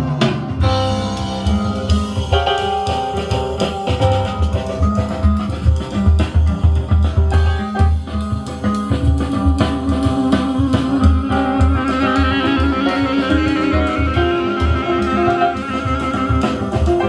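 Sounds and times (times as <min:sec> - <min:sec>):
jazz band playing: 0:00.0 - 0:17.0
wavering horn-like note: 0:10.6 - 0:17.0.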